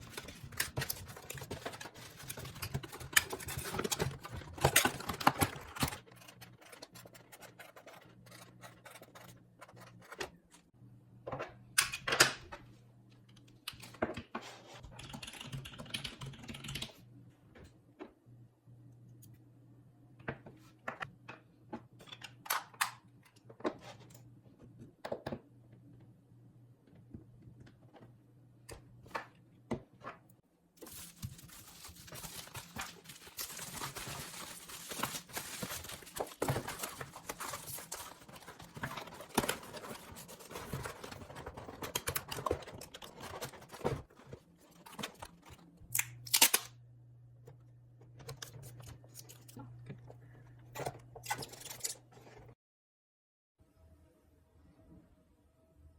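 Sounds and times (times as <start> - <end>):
packing material rustling and crinkling: 0.0 - 10.1, 30.8 - 45.7
items clicking and tapping: 0.0 - 10.6, 30.8 - 46.6.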